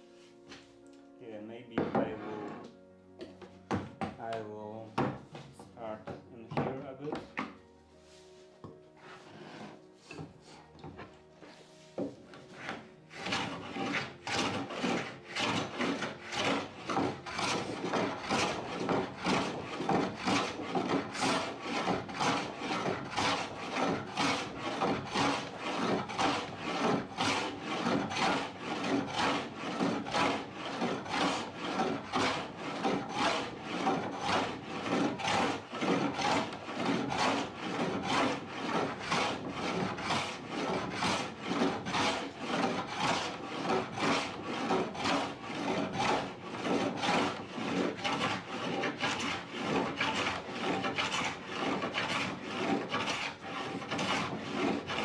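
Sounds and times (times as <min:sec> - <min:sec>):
hand tool rasping wood: 0:01.7 - 0:07.6, 0:08.6 - 0:55.0.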